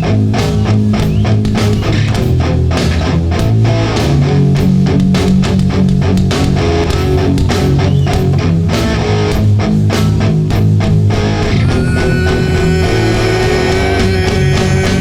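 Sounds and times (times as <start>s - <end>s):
bass guitar: 0.0s - 15.0s
electric guitars: 0.0s - 15.0s
drum and cymbal hits: 0.4s - 15.0s
long held notes: 11.5s - 15.0s.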